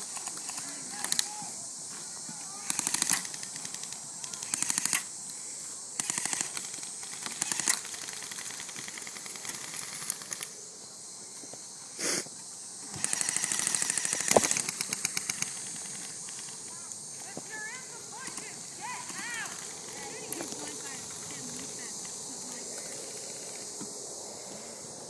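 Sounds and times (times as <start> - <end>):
airsoft guns firing full-auto: 0.0 - 1.5, 2.5 - 5.2, 6.0 - 10.6, 12.8 - 16.8, 17.5 - 21.9.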